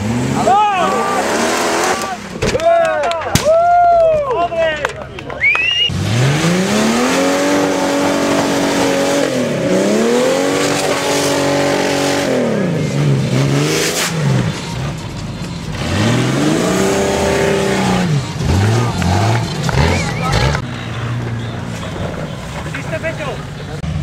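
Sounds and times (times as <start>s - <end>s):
engine revving hard: 0.0s - 2.2s, 5.9s - 14.5s, 15.7s - 20.7s.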